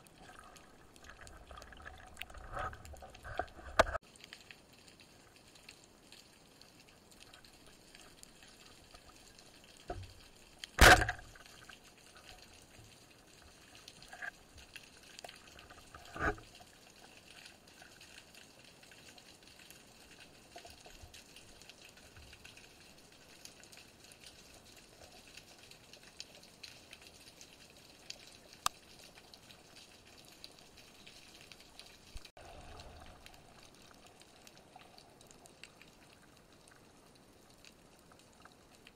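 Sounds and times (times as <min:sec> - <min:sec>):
sharp knock: 0:10.8 - 0:11.2.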